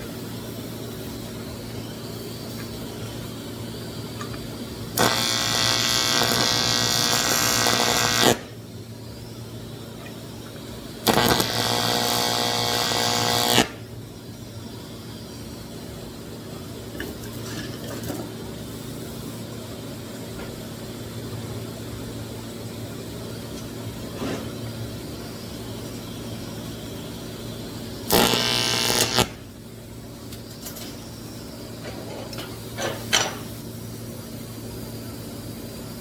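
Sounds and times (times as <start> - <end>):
steady low hum: 0.0 - 36.0
welding arc buzzing: 2.2 - 8.8, 9.4 - 14.1, 25.6 - 31.6.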